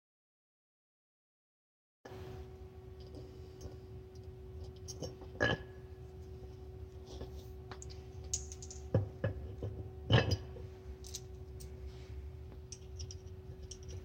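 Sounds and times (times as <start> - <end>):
steady hum: 2.1 - 14.0.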